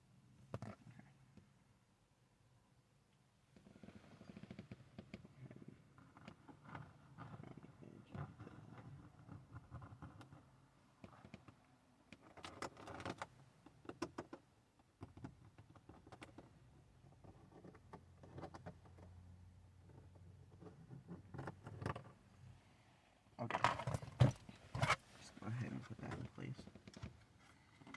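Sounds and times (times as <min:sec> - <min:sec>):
faint low hum: 0:16.7 - 0:27.9.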